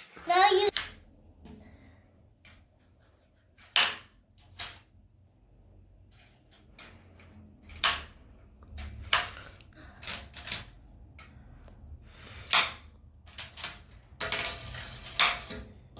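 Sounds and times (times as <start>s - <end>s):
toy game clacks and knocks: 6.0s - 11.4s.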